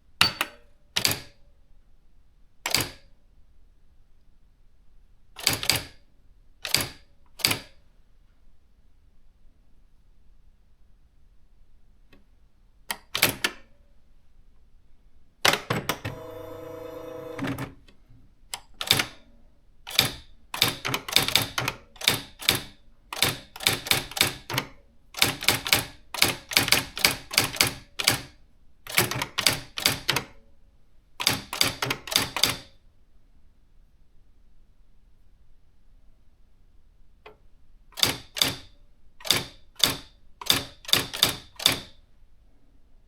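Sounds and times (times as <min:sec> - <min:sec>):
typewriter print strikes: 0:15.8 - 0:17.8
typewriter motor whir: 0:16.0 - 0:17.7.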